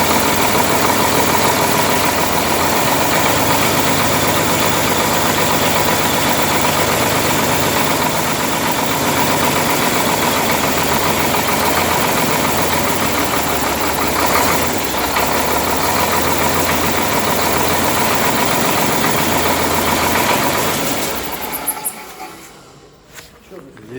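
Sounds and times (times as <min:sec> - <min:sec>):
engine running steadily: 0:00.0 - 0:22.8.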